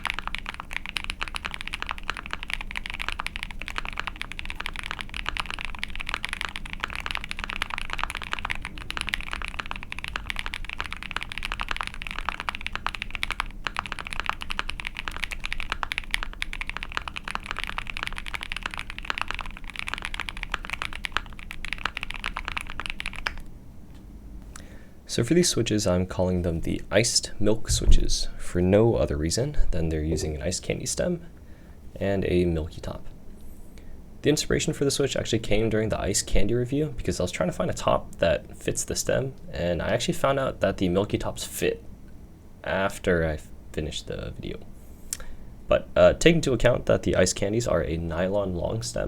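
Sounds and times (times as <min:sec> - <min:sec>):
fast typing on mechanical keyboard: 0:00.0 - 0:23.5.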